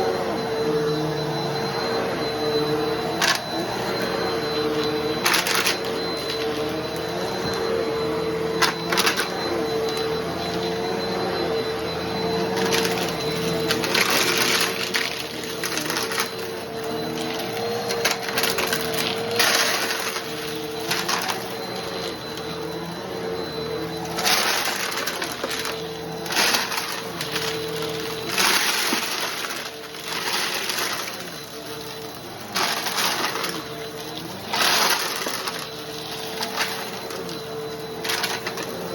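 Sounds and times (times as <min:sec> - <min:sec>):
vacuum cleaner motor whine: 0:00.0 - 0:38.9
debris rattling through vacuum: 0:12.5 - 0:22.6, 0:23.8 - 0:38.9.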